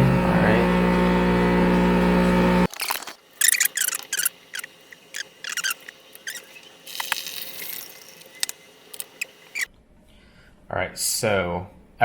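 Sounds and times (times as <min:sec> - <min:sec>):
espresso machine squeaks and clicks: 0:02.7 - 0:09.7
espresso machine hiss: 0:03.6 - 0:09.7.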